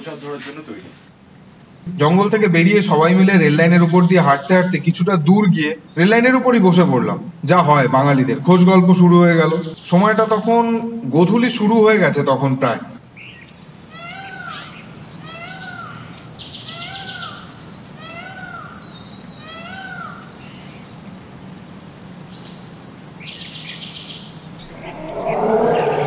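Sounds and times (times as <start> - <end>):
buzzy bird trills: 24.6 - 26.0.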